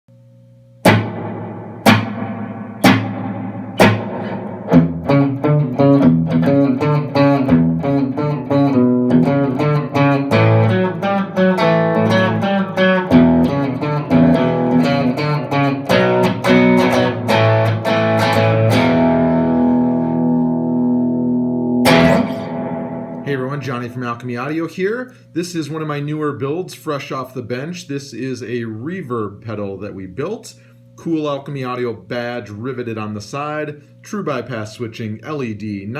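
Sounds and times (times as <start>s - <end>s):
electric guitar with slapback reverb: 0.8s - 24.1s.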